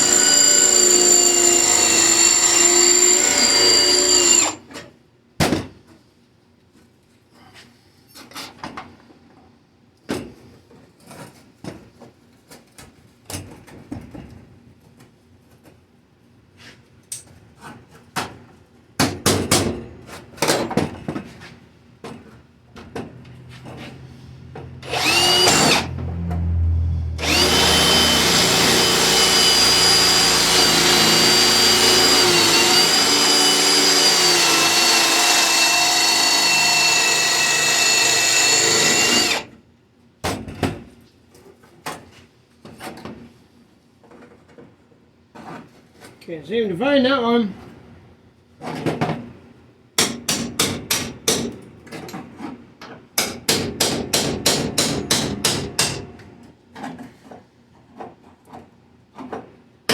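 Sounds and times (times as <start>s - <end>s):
power tool whining: 0.0s - 4.6s, 24.8s - 39.5s.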